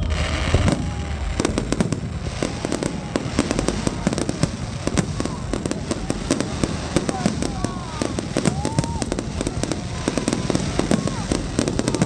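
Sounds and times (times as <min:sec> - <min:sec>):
faint firework whistles: 0:00.0 - 0:12.0
fireworks bangs and crackle: 0:00.0 - 0:12.0.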